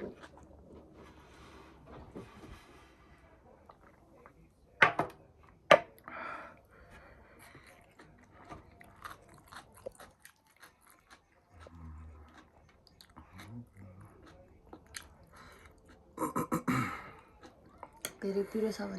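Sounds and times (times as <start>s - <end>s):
crunchy chewing of snack: 0.0s - 1.2s, 6.8s - 18.1s.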